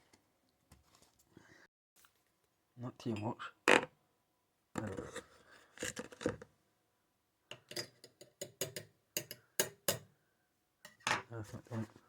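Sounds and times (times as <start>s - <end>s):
spoon tapping against a mug: 7.5s - 10.1s.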